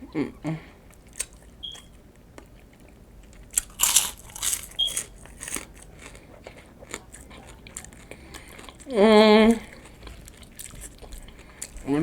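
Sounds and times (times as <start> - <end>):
crunching and chewing chips: 0.9 - 12.0.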